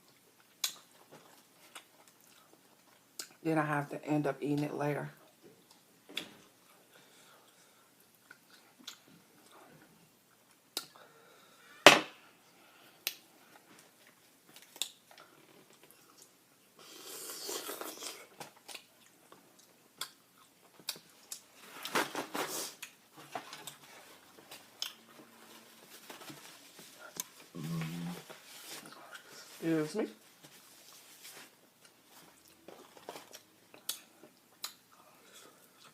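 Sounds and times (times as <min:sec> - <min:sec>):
chewing crispy fried chicken: 0:00.0 - 0:03.4.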